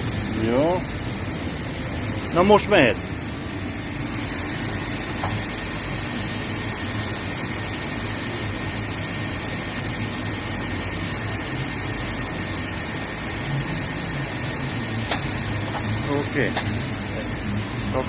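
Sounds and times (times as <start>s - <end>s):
faint machine whine: 0.0s - 18.0s
machining centre humming: 0.0s - 18.0s.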